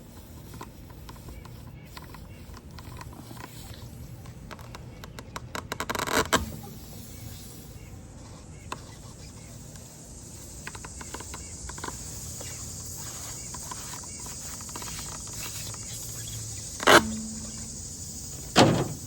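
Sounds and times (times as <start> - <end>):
insects chirring: 0.2 - 19.0
sharp knocks: 16.8 - 19.0.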